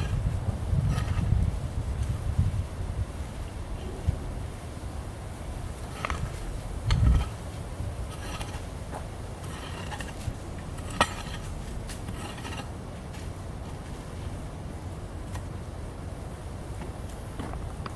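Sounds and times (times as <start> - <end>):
wind on microphone: 0.0 - 12.6.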